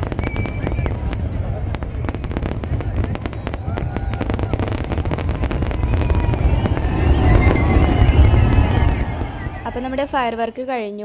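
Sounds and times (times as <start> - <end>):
deep rumble: 0.0 - 10.4
fireworks crackling: 0.0 - 10.8
crowd voices: 0.0 - 11.0.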